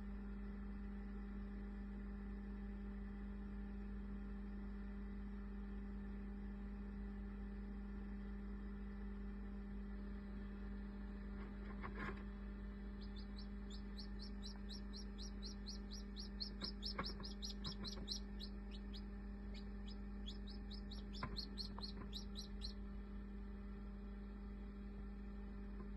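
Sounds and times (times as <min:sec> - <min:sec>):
steady low hum: 0:00.0 - 0:25.9
chick peeping: 0:12.8 - 0:22.8.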